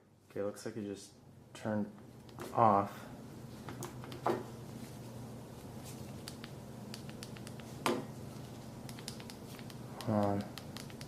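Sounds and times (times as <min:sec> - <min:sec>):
low steady hum: 0:00.0 - 0:11.0
smartphone handling clicks and taps: 0:08.8 - 0:11.0.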